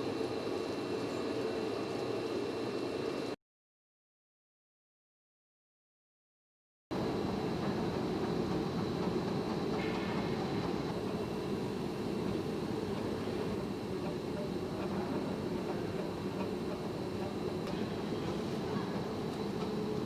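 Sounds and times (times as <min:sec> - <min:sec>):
industrial machine rumble and whine: 0:00.0 - 0:03.4, 0:06.9 - 0:20.0.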